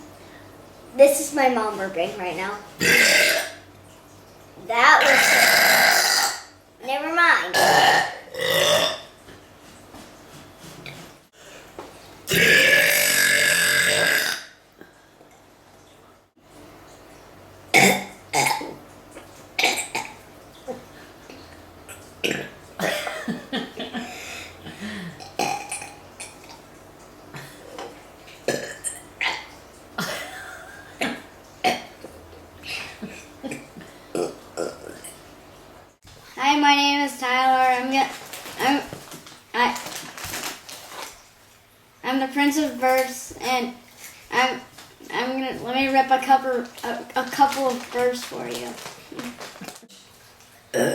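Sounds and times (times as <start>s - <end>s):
person burping: 2.8s - 3.6s, 5.0s - 6.5s, 7.5s - 9.1s, 12.3s - 14.6s, 17.7s - 18.8s, 19.6s - 20.8s, 21.9s - 26.6s, 28.5s - 32.0s, 33.0s - 35.2s.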